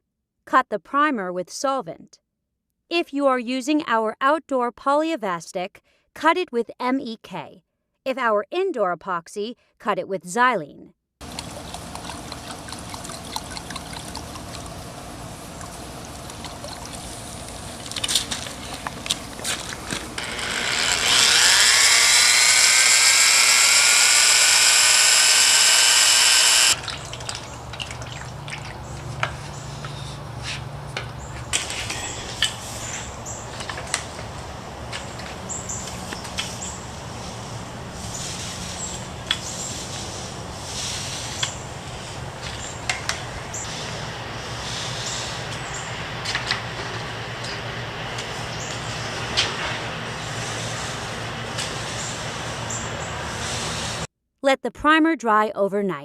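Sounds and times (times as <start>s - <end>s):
low steady hum: 11.2s - 30.0s
electric drill whining: 19.8s - 26.8s.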